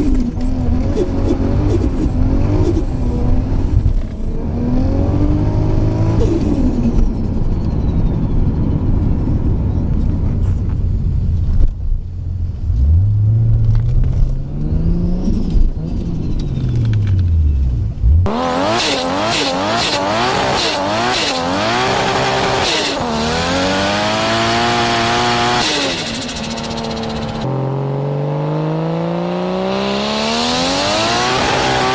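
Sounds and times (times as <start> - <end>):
car engine revving: 0.0 - 6.9, 12.5 - 31.9
turbo flutter chattering: 25.6 - 27.5.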